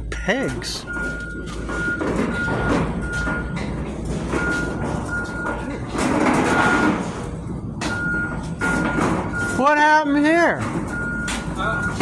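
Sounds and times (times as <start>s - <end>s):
steady low rumble: 0.0s - 9.5s
vehicle backup alarm beeping: 0.3s - 5.8s, 6.4s - 7.2s, 7.8s - 12.0s.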